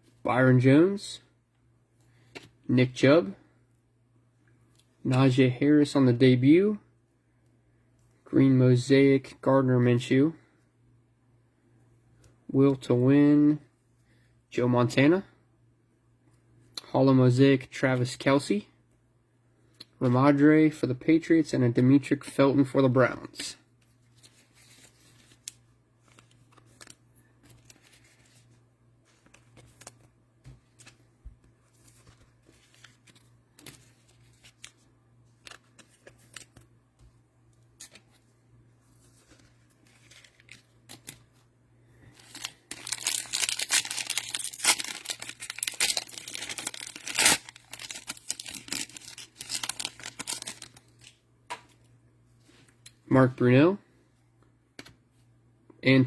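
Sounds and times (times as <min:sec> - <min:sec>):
cellophane crinkling and tearing: 0:39.2 - 0:41.3, 0:42.0 - 0:51.2.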